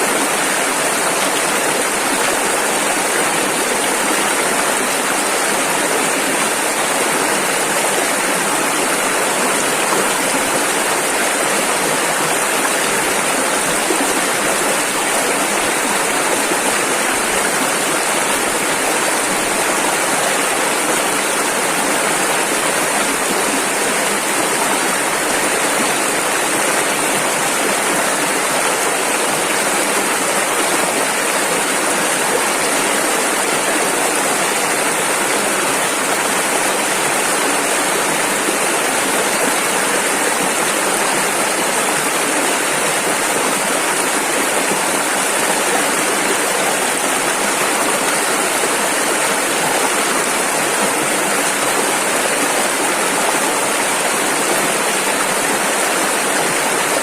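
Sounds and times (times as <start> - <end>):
rushing river rapids: 0.0 - 57.0.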